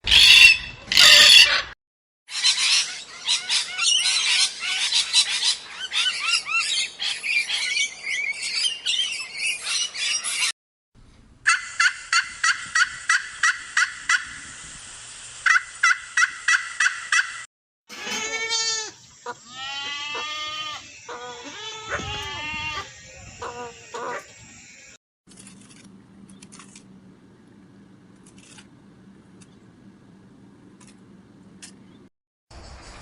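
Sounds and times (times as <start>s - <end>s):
domestic fowl calling: 0.1s - 1.7s, 19.2s - 24.3s
chatter of many birds: 2.3s - 10.5s, 20.1s - 25.0s.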